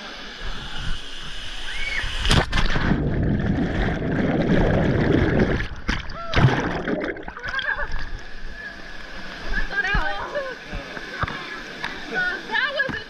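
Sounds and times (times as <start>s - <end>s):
muffled churning water: 0.0s - 13.0s
splash into water: 2.2s - 3.9s, 4.6s - 7.8s.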